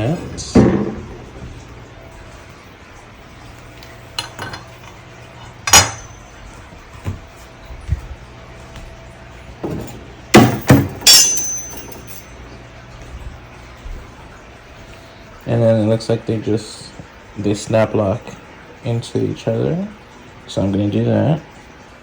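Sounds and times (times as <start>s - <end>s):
stand parts knocking and clicking: 5.6s - 6.2s, 9.6s - 12.2s.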